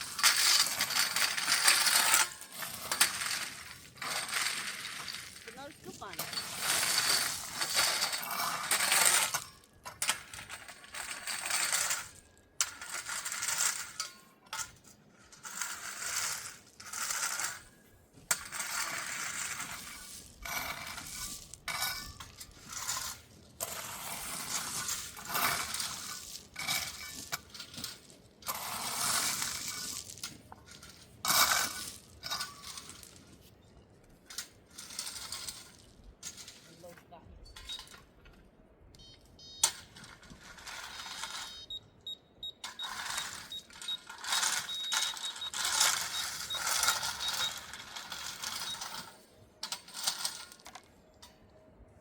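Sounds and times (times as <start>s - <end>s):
small stones clattering: 0.0s - 13.7s, 18.4s - 36.9s
shovel scraping gravel: 0.0s - 38.2s, 39.6s - 41.6s, 42.6s - 51.1s.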